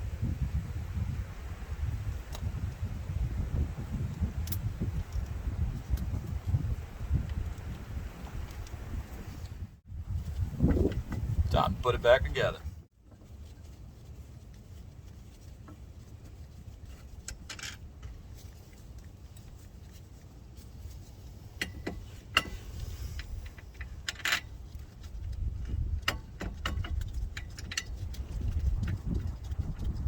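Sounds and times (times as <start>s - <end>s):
steady low rumble: 0.0s - 16.8s.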